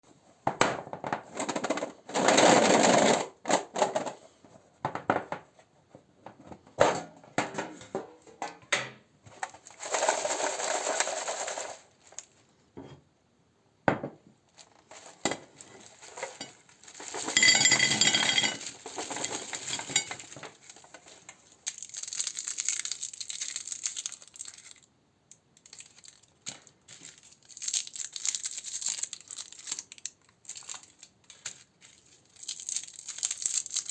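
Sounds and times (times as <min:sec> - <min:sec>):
hard candies clattering on a dish: 0:09.4 - 0:12.3, 0:14.6 - 0:24.8, 0:25.6 - 0:33.9
candy packaging crinkling and tearing: 0:09.4 - 0:12.4, 0:14.5 - 0:33.9.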